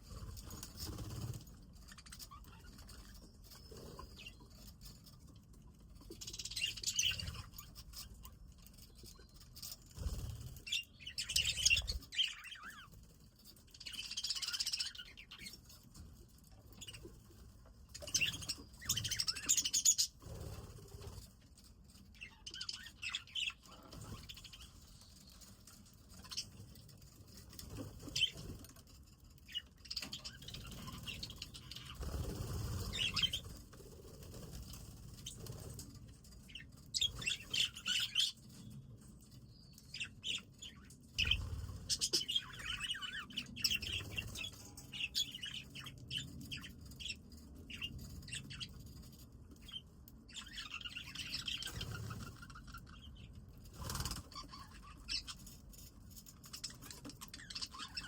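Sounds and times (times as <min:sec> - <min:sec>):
budgerigars twittering: 0:18.0 - 0:21.1, 0:29.4 - 0:35.7, 0:36.5 - 0:38.4, 0:39.8 - 0:48.8, 0:49.6 - 0:58.0.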